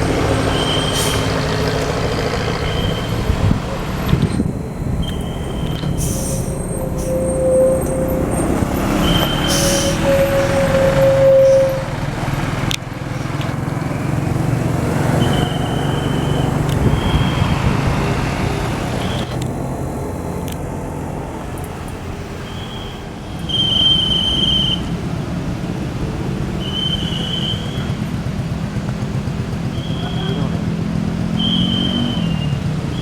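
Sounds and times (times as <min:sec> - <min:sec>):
passing vehicle engines rumbling: 0:00.0 - 0:33.0
high whistle-like tones: 0:00.3 - 0:01.4, 0:02.5 - 0:11.9, 0:15.2 - 0:17.8, 0:22.4 - 0:24.9, 0:26.6 - 0:28.0, 0:29.7 - 0:30.6, 0:31.4 - 0:33.0.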